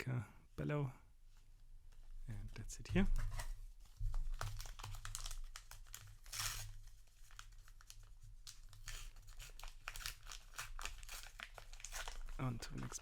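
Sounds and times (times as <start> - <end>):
paper rustling: 3.0 - 13.0
wrappers crinkling: 3.8 - 13.0.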